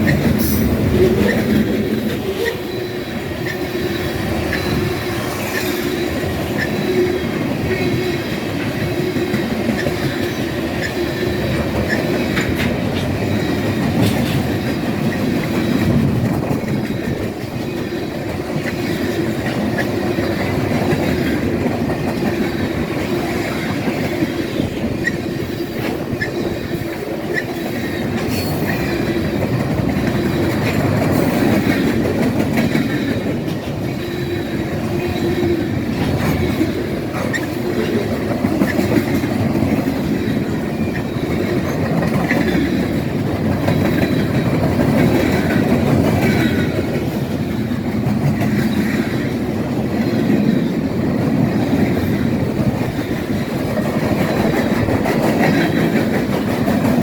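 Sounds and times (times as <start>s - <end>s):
railroad cars rumbling past: 0.0s - 57.0s
wheels clacking over rail joints: 0.0s - 57.0s
faint high wheel squeal: 0.4s - 8.2s.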